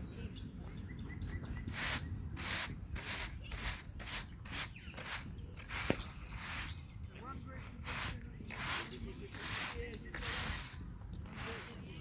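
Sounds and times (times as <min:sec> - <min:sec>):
broom brushing dirt: 0:01.8 - 0:06.8, 0:07.6 - 0:12.0.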